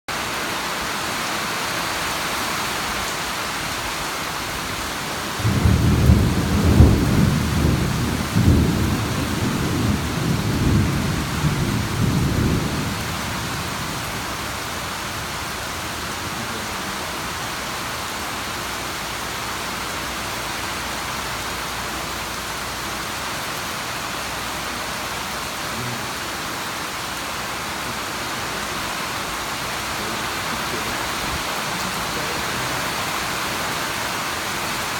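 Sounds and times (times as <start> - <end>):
steady rainfall: 0.1 - 34.9
thunder rumbling: 5.2 - 17.8.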